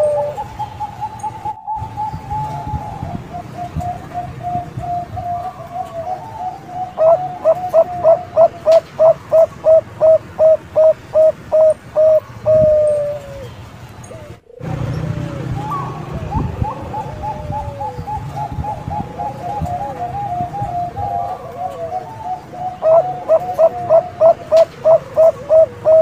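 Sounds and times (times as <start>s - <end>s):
dove cooing: 0.0s - 26.0s.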